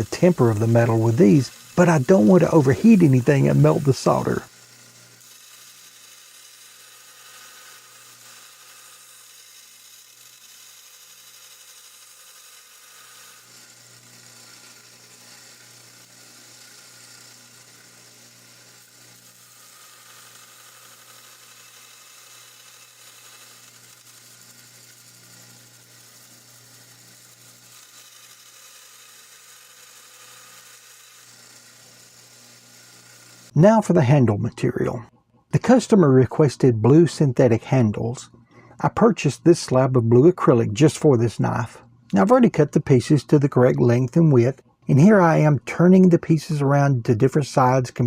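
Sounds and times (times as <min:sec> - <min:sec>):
belt sander grinding metal: 0:00.0 - 0:34.4.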